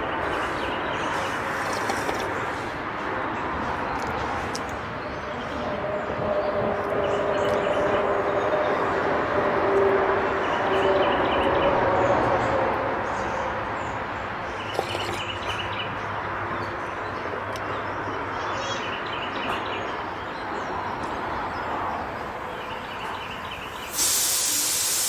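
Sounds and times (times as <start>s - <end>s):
small birds chirping: 13.2s - 25.0s.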